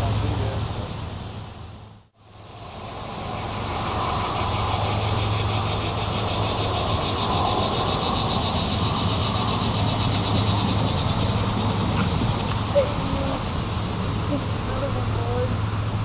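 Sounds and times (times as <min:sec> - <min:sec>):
even rushing noise: 0:00.0 - 0:16.0.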